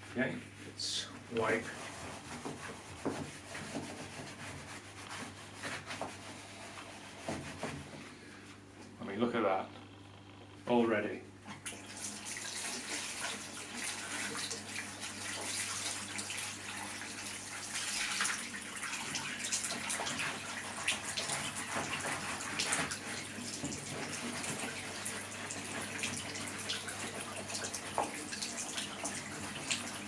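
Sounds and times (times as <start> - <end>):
wet cloth scrubbing: 1.1 - 7.9, 11.5 - 30.0
steady low hum: 4.6 - 11.6
hot water running into bath: 11.5 - 30.0.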